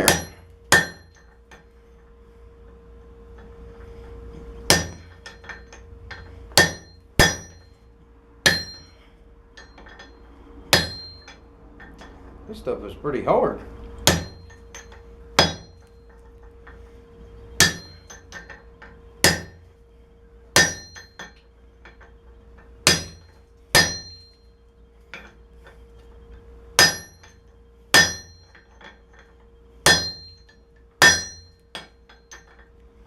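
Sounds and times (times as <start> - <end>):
hammer striking anvil: 0.0 - 1.6, 4.7 - 7.8, 8.4 - 9.0, 9.6 - 12.1, 14.0 - 16.2, 17.6 - 19.6, 20.6 - 22.1, 22.8 - 24.4, 26.8 - 32.7.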